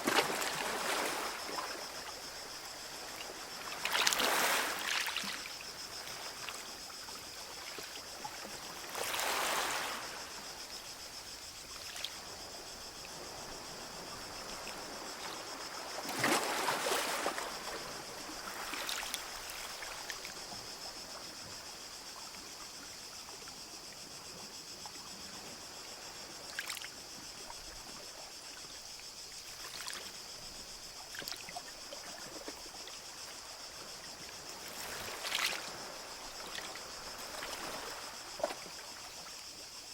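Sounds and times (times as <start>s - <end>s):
small waves washing onto beach: 0.0s - 11.1s, 11.7s - 21.4s, 31.3s - 39.3s.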